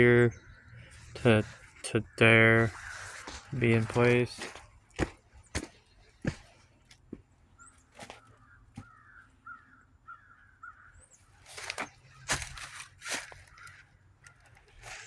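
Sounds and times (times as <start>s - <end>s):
bird calling: 0.0s - 15.0s
handling knocks and rustling: 2.6s - 7.3s, 11.4s - 15.0s.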